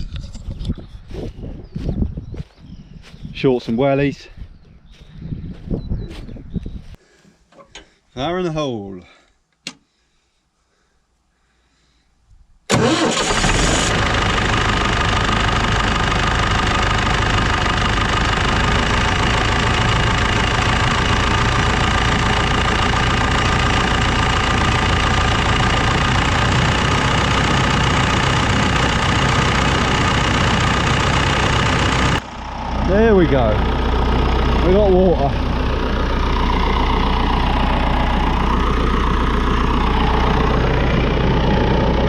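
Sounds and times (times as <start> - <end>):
pump engine running: 12.7 - 42.0.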